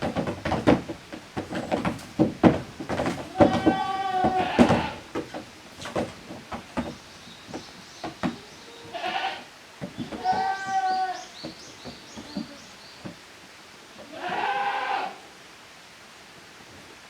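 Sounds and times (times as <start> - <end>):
goat kid bleating: 3.3 - 5.0, 8.5 - 11.3, 14.0 - 15.2.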